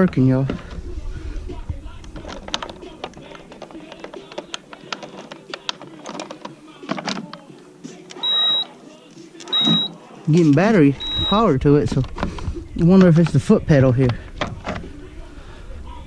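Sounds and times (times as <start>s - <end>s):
hands clicking and rattling wiring: 2.0s - 15.0s
short high electronic beep: 8.2s - 8.7s, 9.5s - 10.0s, 11.0s - 11.5s.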